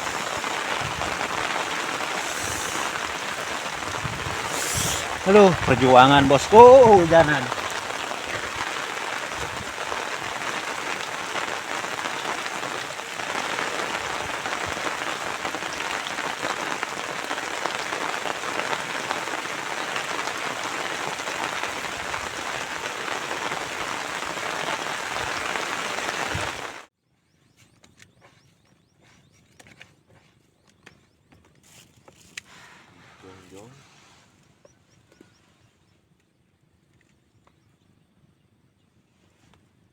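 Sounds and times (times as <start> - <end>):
heavy rain falling: 0.0 - 26.9.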